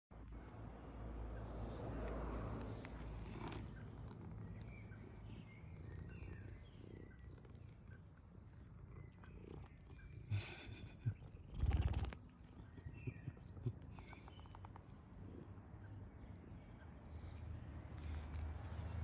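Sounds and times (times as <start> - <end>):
cat purring: 1.4 - 15.9.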